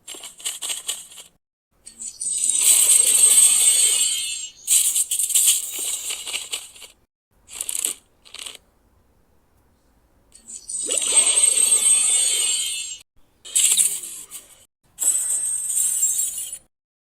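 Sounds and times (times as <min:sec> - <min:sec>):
bright jingling sound effects: 0:01.9 - 0:06.0, 0:10.4 - 0:14.2.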